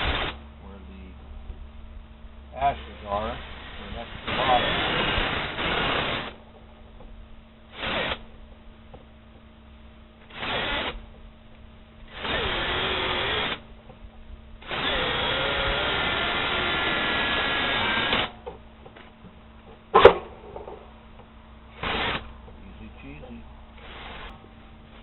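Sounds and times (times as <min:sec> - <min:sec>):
cordless drill boring into steel: 0:04.3 - 0:06.3, 0:12.1 - 0:13.6, 0:14.6 - 0:18.3.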